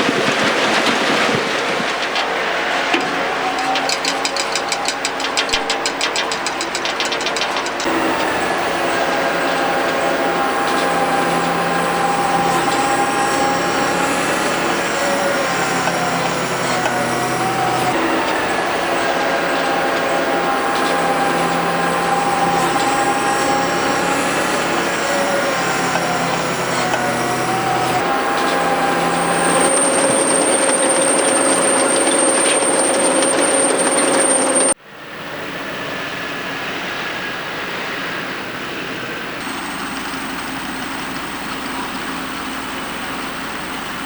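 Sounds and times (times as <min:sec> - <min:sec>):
tractor engine: 0:00.0 - 0:34.8, 0:35.9 - 0:44.0
harvester rattling and whining: 0:00.0 - 0:44.0.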